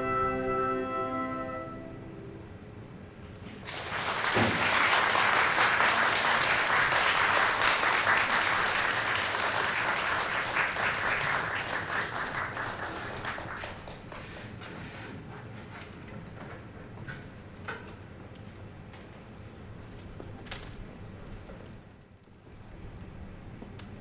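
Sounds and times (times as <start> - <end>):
audience applauding: 3.6 - 14.5.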